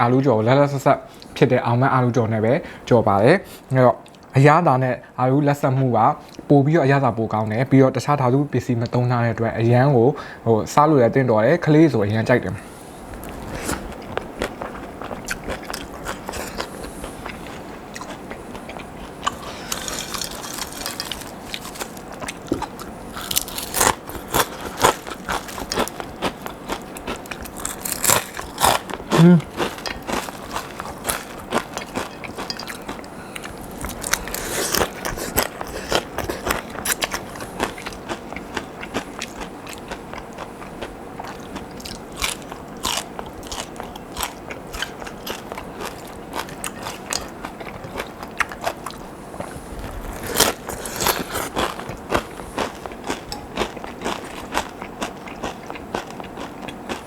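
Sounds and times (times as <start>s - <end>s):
potato sticks crunching: 13.2s - 57.0s.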